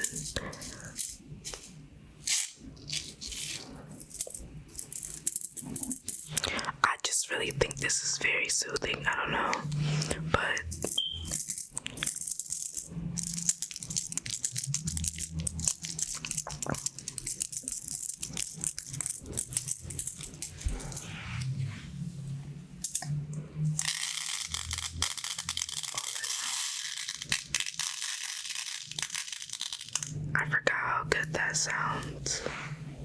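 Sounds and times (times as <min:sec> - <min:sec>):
pins rattling and clicking: 0:00.0 - 0:06.6, 0:10.6 - 0:21.0, 0:23.7 - 0:30.2.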